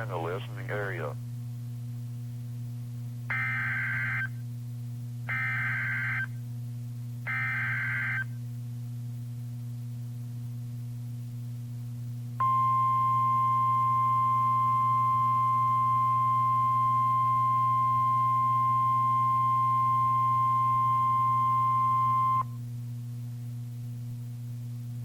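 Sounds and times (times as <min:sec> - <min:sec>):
low receiver hum: 0:00.0 - 0:25.0
steady alarm tone: 0:03.3 - 0:04.3, 0:05.3 - 0:06.3, 0:07.3 - 0:08.3, 0:12.4 - 0:22.4.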